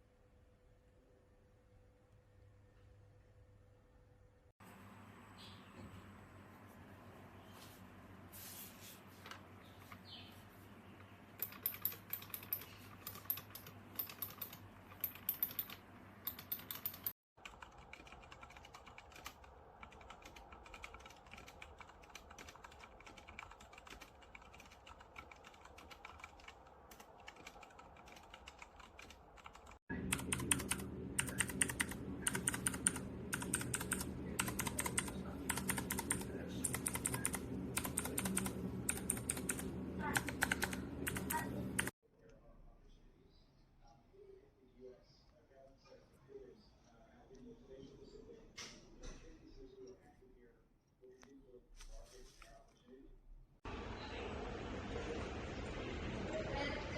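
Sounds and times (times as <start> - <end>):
mechanical keyboard key clicks: 11.4 - 26.3.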